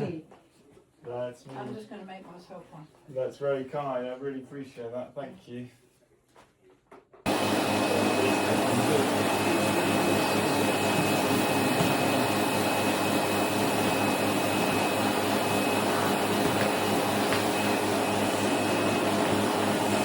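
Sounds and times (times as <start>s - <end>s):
high whine: 7.3s - 20.0s
vacuum cleaner running on carpet: 7.3s - 20.0s.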